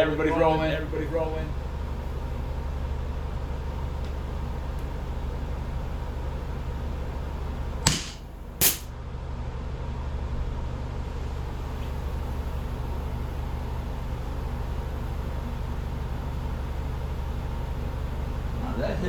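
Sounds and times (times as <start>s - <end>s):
steady low hum: 0.0s - 19.0s
air pistol shots: 7.9s - 8.9s.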